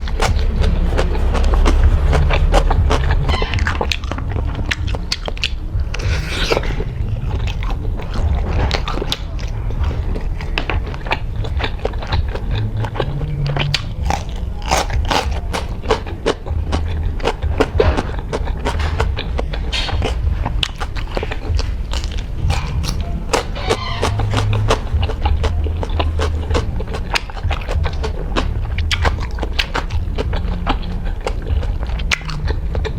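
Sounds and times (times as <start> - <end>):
biting and chewing sausages: 0.0 - 32.9
steady low rumble: 0.0 - 32.9.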